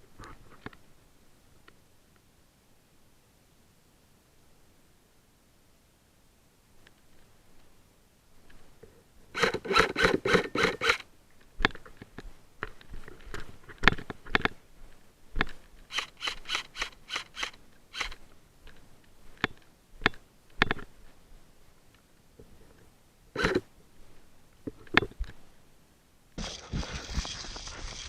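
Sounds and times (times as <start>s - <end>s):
airsoft rifle shots clacking: 9.4s - 11.0s, 15.9s - 18.2s.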